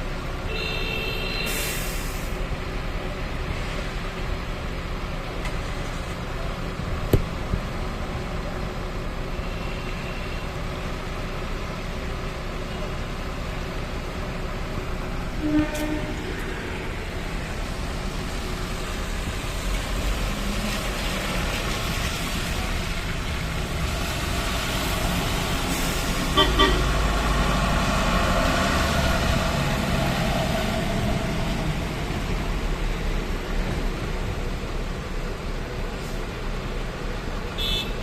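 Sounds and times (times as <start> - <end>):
highway traffic passing: 0.0 - 38.0
vehicle horn toots: 0.5 - 1.6, 15.4 - 16.3, 26.4 - 26.9, 37.6 - 38.0.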